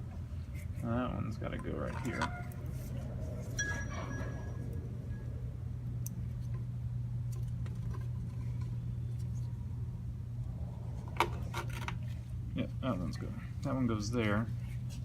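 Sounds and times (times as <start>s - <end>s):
low workshop hum: 0.0s - 15.0s.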